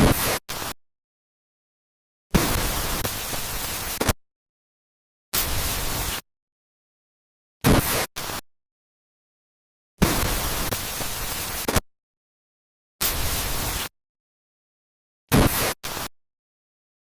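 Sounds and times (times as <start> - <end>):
harsh static hiss bursts: 0.0 - 0.8, 2.3 - 4.2, 5.4 - 6.3, 7.6 - 8.4, 10.0 - 11.9, 13.0 - 14.0, 15.3 - 16.2.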